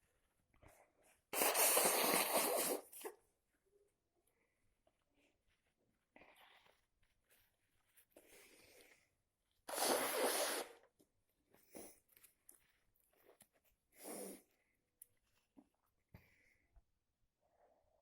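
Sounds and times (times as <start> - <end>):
sniffs and breaths: 0.6 - 3.2, 6.0 - 10.9, 11.5 - 14.9.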